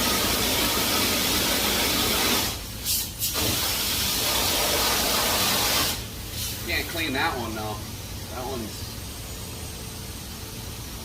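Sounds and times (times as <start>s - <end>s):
pressure washer spraying: 0.0s - 6.7s.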